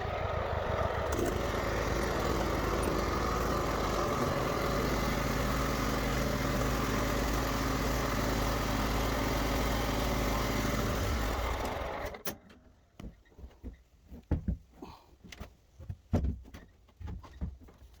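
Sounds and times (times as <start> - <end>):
lawn mower engine running: 0.0 - 12.4.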